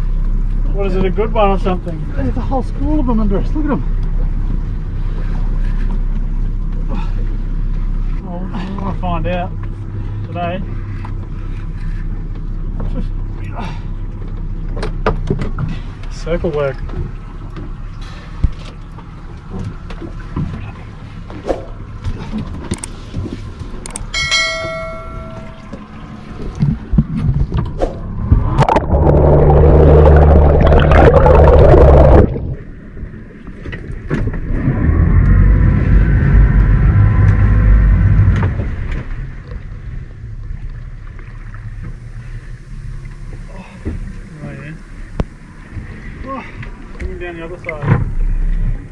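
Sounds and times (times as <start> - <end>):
boat engine throttling up: 0.0 - 48.9
short high-pitched tone: 24.2 - 25.8.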